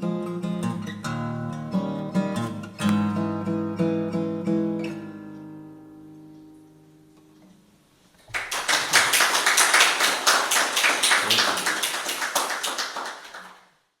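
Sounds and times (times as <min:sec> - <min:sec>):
acoustic guitar notes: 0:00.0 - 0:07.7
hand clapping: 0:08.3 - 0:13.7.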